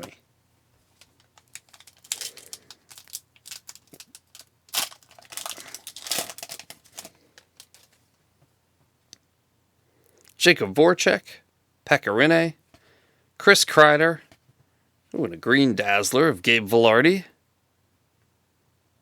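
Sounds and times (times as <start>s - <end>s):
wrapper tearing and crinkling: 1.0s - 8.0s.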